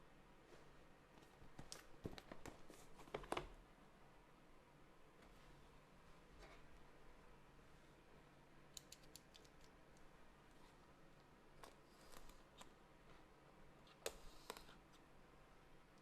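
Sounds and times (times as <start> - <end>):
cardboard packaging clicks and taps: 1.5 - 3.5.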